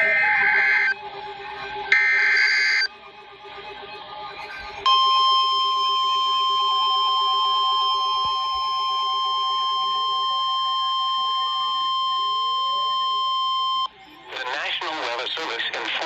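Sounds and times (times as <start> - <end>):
steady warning alarm tone: 0.0 - 1.0, 1.9 - 2.9, 4.8 - 13.9
warbling digital data screech: 0.0 - 1.0, 1.9 - 2.9.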